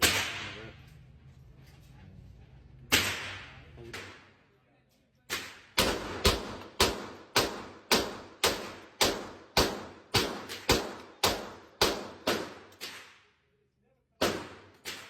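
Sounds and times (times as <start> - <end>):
handgun shots: 0.0 - 0.6, 2.9 - 4.4, 5.3 - 13.2, 14.2 - 15.0.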